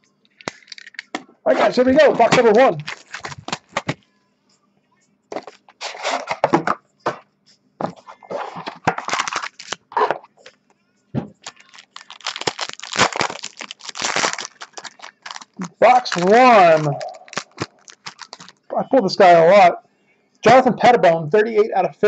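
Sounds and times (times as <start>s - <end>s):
wrapping and cardboard tearing: 2.2s - 4.0s, 8.3s - 10.1s, 11.4s - 18.6s.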